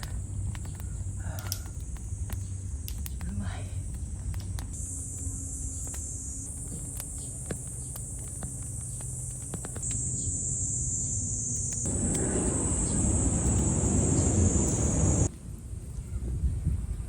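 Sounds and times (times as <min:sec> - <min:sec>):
faint clicks: 0:00.0 - 0:10.2, 0:11.5 - 0:15.3
insects buzzing: 0:00.0 - 0:15.3
low rushing noise: 0:09.9 - 0:15.3.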